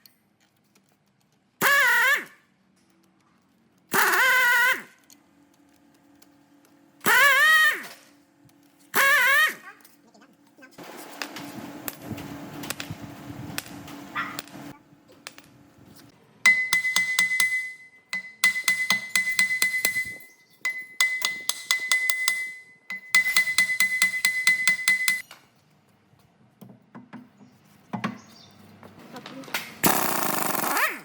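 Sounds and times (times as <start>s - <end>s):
hammer striking metal: 16.4s - 25.2s.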